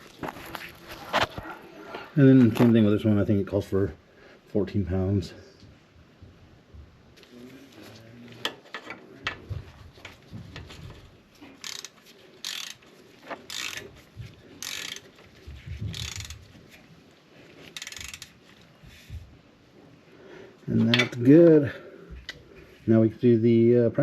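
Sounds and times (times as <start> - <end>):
ratchet wrench clicking: 11.6 - 12.8, 13.5 - 13.9, 14.6 - 15.1, 15.9 - 16.4, 17.8 - 18.4.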